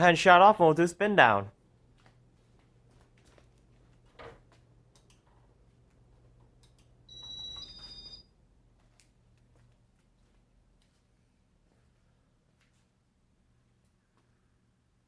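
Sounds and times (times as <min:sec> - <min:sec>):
two-tone electronic beep: 0:07.1 - 0:08.3.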